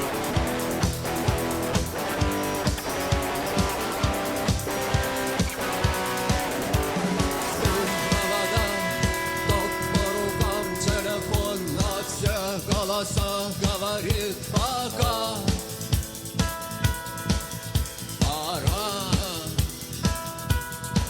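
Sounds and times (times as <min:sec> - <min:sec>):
overdriven electric guitar lead: 0:00.0 - 0:16.4
bass: 0:00.0 - 0:21.0
steady drum beat: 0:00.0 - 0:21.0.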